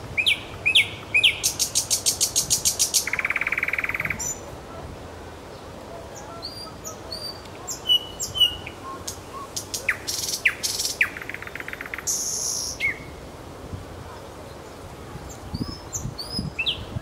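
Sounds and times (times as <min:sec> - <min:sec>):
bird singing: 0:00.2 - 0:04.5, 0:05.5 - 0:13.1.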